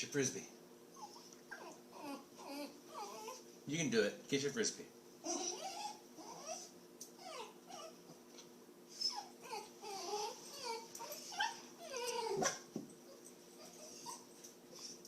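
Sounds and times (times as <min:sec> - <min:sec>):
dog whimpering: 0:00.9 - 0:03.5, 0:05.2 - 0:08.1, 0:08.9 - 0:15.0.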